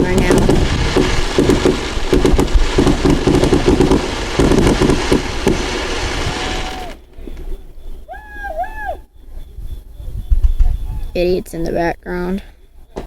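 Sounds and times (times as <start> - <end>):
fireworks bangs and crackling: 0.0 - 7.8.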